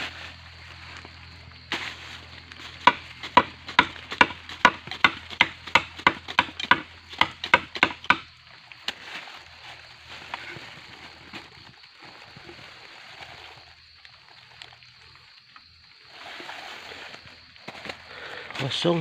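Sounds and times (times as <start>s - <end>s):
chopping bamboo stem: 2.8s - 8.3s.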